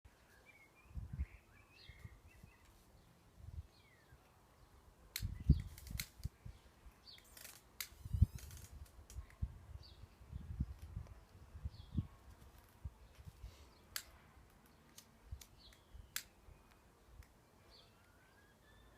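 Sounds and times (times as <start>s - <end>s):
faint bird chirps: 0.1s - 11.0s, 15.4s - 18.9s
sharp clicks: 5.1s - 9.4s, 13.9s - 17.4s.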